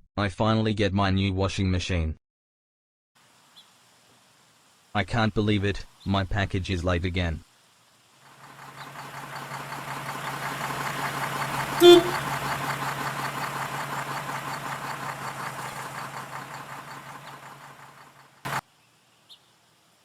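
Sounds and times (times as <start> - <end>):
vehicle engine passing: 8.2 - 18.6
short horn toot: 11.8 - 12.4.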